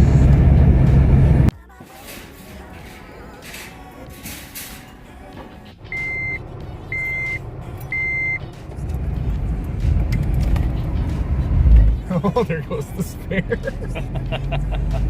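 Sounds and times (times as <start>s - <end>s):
vehicle rumble moving: 0.0s - 1.6s, 2.3s - 15.0s
vehicle reversing alarm beeping: 5.9s - 8.5s.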